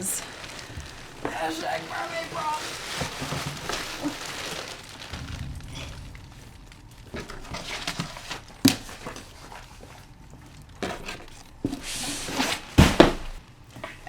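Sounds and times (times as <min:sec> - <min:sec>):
cardboard packaging rustling: 0:00.0 - 0:13.5
sharp thump: 0:05.1 - 0:07.6.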